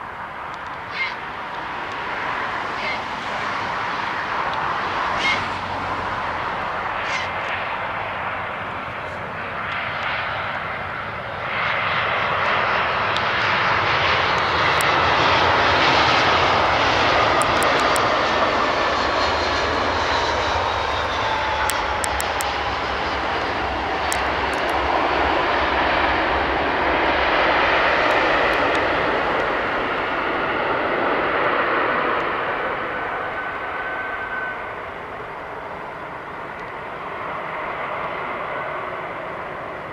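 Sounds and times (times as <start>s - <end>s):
aircraft engines passing: 0.0s - 39.9s
falling engine whine: 0.0s - 39.9s.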